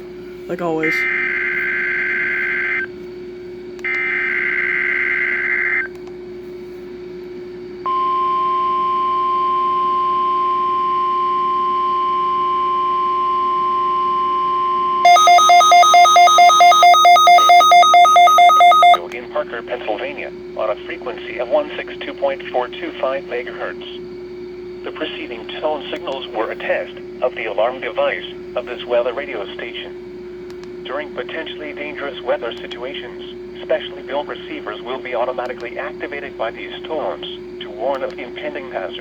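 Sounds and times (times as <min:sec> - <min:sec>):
steady warning alarm tone: 0:00.6 - 0:02.9, 0:07.9 - 0:19.0
low steady hum: 0:05.8 - 0:24.0
rapid beeping: 0:15.0 - 0:19.0
buzzing data bursts: 0:15.1 - 0:19.0.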